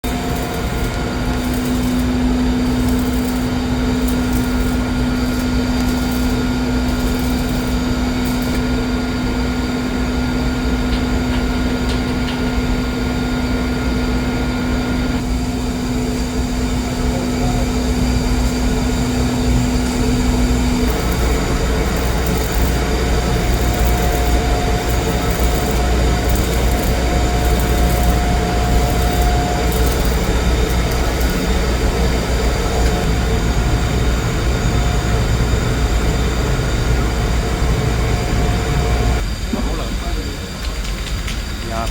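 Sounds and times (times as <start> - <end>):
welding noise: 0.0 - 9.0, 18.0 - 35.2
machine hums: 0.0 - 40.6.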